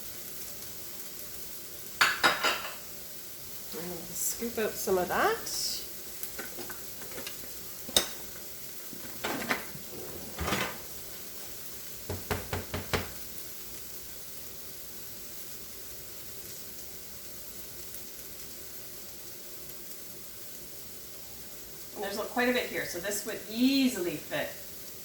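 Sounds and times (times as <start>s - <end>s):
faint steady sizzle: 0.0s - 25.0s
spoon knocking and scraping a pan: 2.0s - 2.8s, 6.3s - 9.8s, 12.1s - 13.2s.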